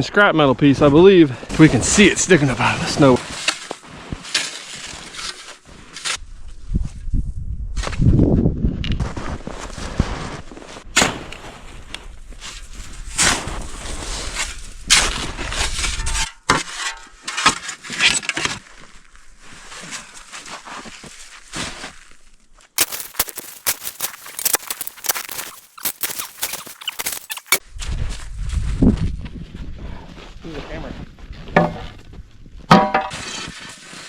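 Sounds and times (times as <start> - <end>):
footsteps crunching in snow: 9.0 - 10.9, 18.7 - 29.4
scrap steel knocking and scraping: 15.8 - 18.3, 31.6 - 32.0, 32.7 - 33.6
clattering knocks: 32.7 - 33.2.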